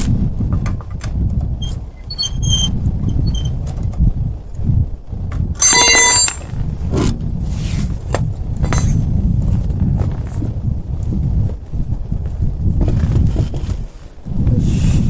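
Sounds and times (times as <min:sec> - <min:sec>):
wind rumble on microphone: 0:00.0 - 0:15.0
loud metallic ringing: 0:05.6 - 0:06.5
metal tool clanks: 0:05.6 - 0:06.5.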